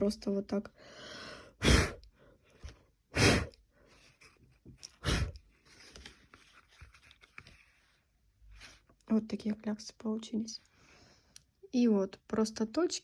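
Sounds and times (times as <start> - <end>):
short puffs of breath: 0.8 - 2.2, 3.1 - 4.0, 5.0 - 5.4.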